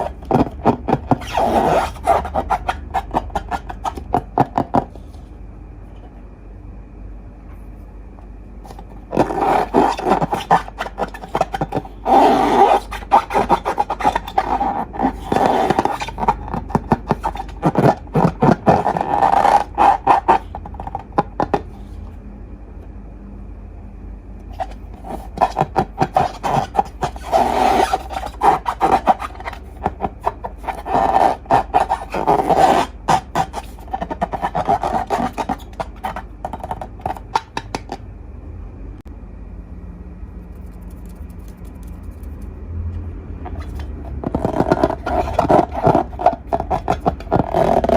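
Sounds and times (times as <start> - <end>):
sticky slime clicks and scrapes: 40.5 - 42.5.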